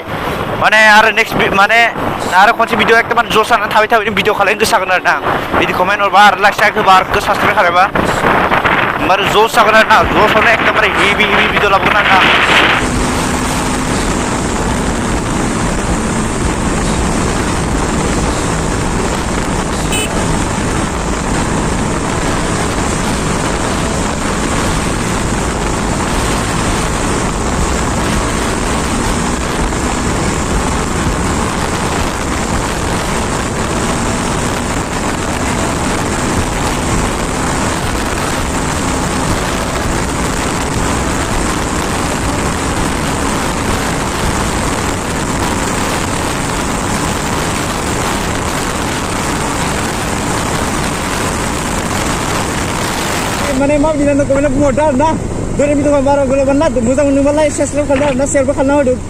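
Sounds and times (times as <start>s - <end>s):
wind rushing over helmet: 7.9s - 9.1s, 10.0s - 53.6s
motorcycle engine running: 12.1s - 59.0s.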